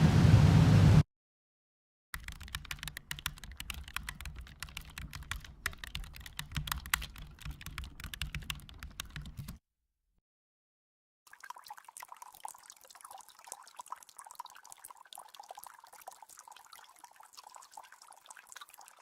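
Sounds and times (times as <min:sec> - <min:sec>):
rapid irregular clicking: 0:02.2 - 0:09.6.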